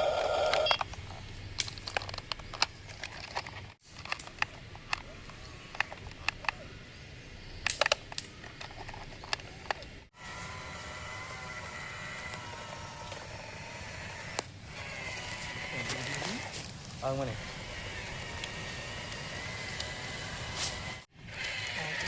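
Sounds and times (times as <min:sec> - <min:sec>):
small electric motor whining: 0:00.0 - 0:00.9, 0:09.4 - 0:22.0.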